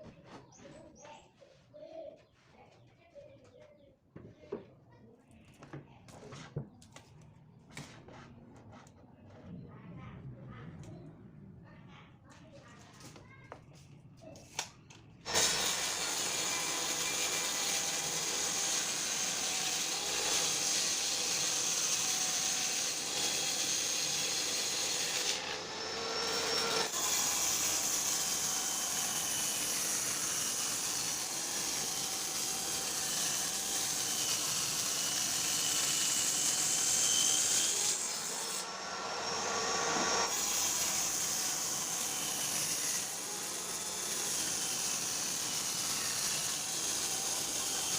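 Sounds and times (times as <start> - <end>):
power saw cutting wood: 15.3 - 47.9.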